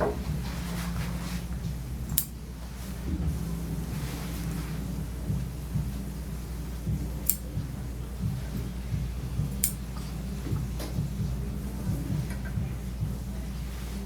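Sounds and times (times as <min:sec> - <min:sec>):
shears snipping hair: 0:00.0 - 0:03.2, 0:06.9 - 0:11.4
steady low hum: 0:00.0 - 0:14.0.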